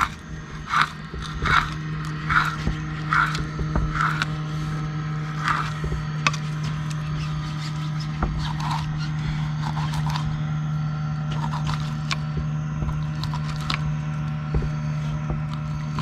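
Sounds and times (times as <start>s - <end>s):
knife slicing fish on a board: 0.0s - 10.3s
low machine hum: 0.0s - 16.0s.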